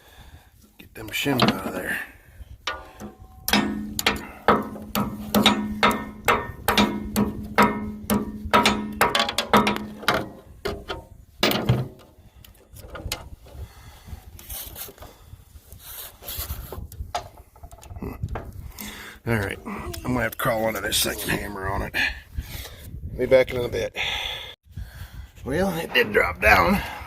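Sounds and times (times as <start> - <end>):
hammer striking steel: 2.7 - 10.0.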